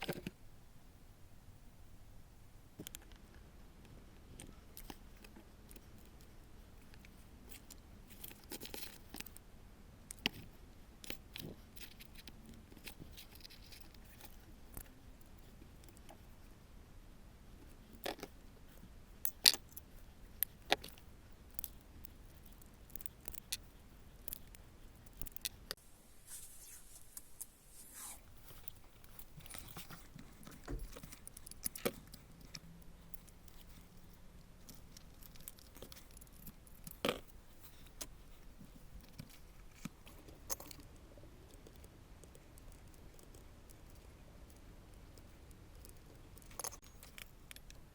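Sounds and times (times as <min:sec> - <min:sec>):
small parts clicking and rattling: 0:04.3 - 0:09.4, 0:10.1 - 0:16.5, 0:17.6 - 0:25.8, 0:28.4 - 0:47.9
rustling scrape: 0:25.8 - 0:31.4.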